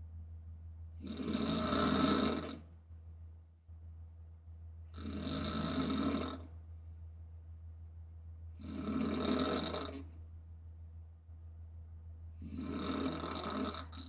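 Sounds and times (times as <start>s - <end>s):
steady low hum: 0.0s - 14.0s
woman snoring: 1.0s - 2.6s, 5.0s - 6.5s, 8.6s - 10.1s, 12.4s - 14.0s.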